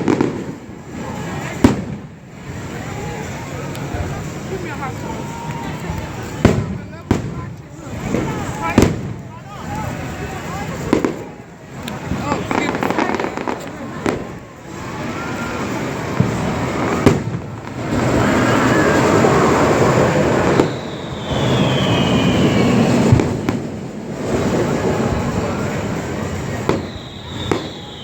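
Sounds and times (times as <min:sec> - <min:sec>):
firework bangs: 0:00.0 - 0:28.0
descending firework whistle: 0:12.2 - 0:28.0.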